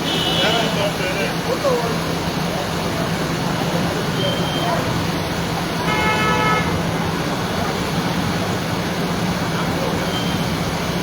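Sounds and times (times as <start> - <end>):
vehicle horn toot: 0.0 - 0.8, 5.9 - 6.8
road traffic engine drone: 0.0 - 11.0.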